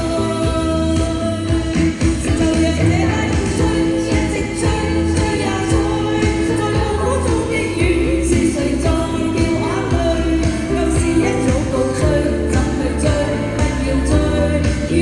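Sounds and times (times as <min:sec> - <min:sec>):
pop song with solo voice: 0:00.0 - 0:15.0.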